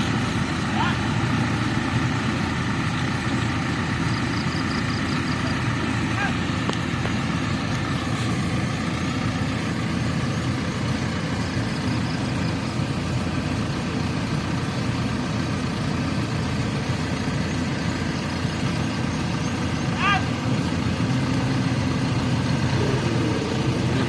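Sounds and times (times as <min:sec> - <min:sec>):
truck engine running: 0:00.0 - 0:24.0.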